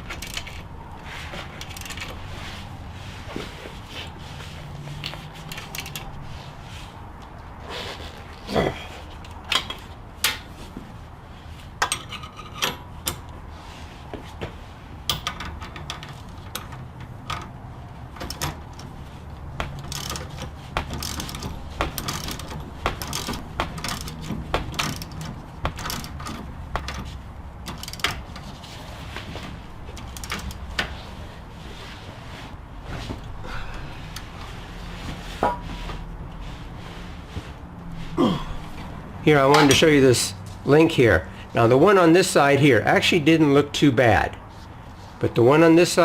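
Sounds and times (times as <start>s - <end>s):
metal tools clinking: 0.0s - 0.7s, 5.0s - 6.2s, 11.8s - 13.2s
ratchet clicking: 5.5s - 6.1s, 19.6s - 28.5s, 29.9s - 30.9s.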